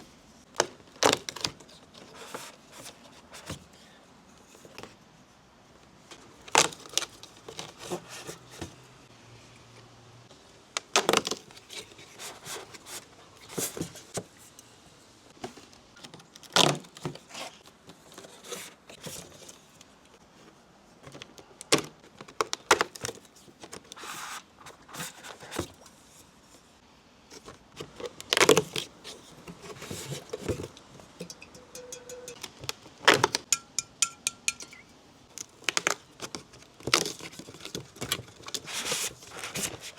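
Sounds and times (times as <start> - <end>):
packaging rustling and scraping: 6.1 - 8.8, 11.0 - 14.4, 22.0 - 26.4, 27.3 - 31.2, 35.4 - 39.9.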